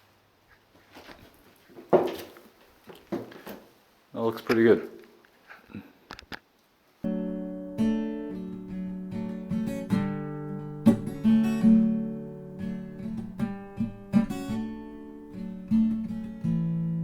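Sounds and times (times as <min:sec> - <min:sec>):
acoustic guitar strumming chords: 0:07.0 - 0:17.0.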